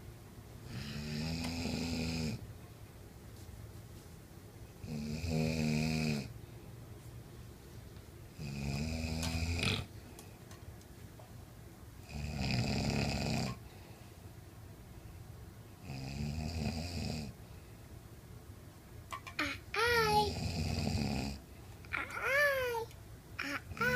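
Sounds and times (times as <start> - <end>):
man snoring: 0.7 - 2.4, 4.8 - 6.3, 8.4 - 9.9, 12.0 - 13.6, 15.8 - 17.4, 20.3 - 21.4
quiet breathing: 13.0 - 15.3, 17.2 - 18.0.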